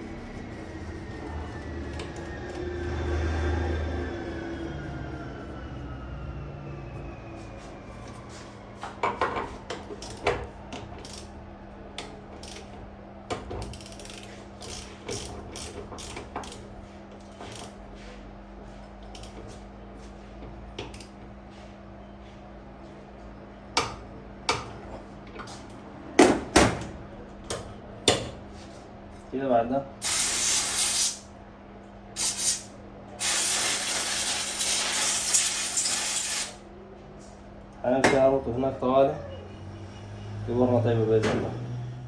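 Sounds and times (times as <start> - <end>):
steady low hum: 0.0 - 8.8.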